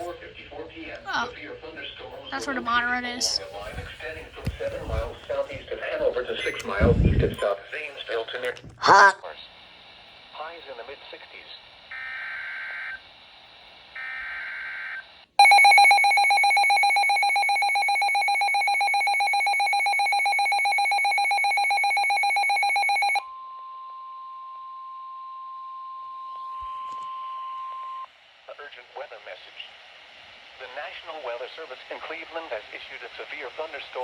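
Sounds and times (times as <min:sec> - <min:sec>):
steady warning alarm tone: 0:14.0 - 0:27.0
pulsing two-tone alert signal: 0:15.4 - 0:23.2.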